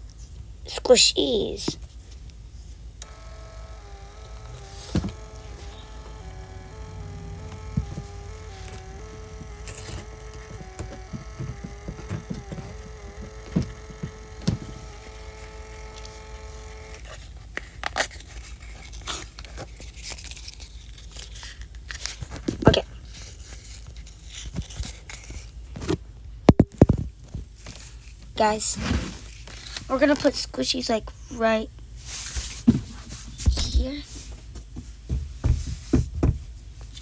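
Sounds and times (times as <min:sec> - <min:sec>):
electrical hum: 0:03.0 - 0:17.3.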